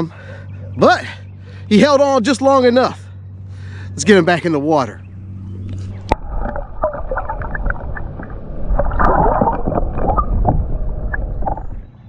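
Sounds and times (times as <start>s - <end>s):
water splashing and sloshing: 5.5s - 11.8s.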